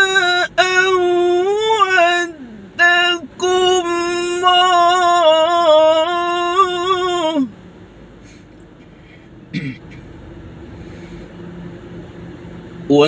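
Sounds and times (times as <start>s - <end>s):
man chanting melodically: 0.0s - 7.5s.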